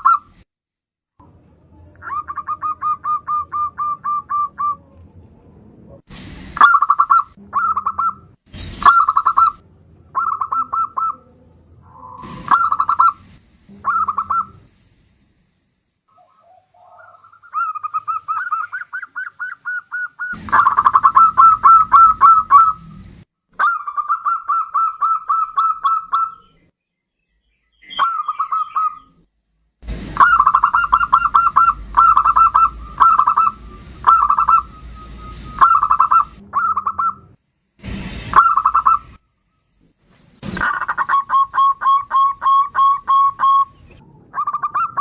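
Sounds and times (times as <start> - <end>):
dove cooing: 2.0 - 5.0, 8.8 - 13.2, 13.8 - 14.6, 16.1 - 22.9, 30.2 - 34.7, 35.6 - 37.3, 40.6 - 45.0.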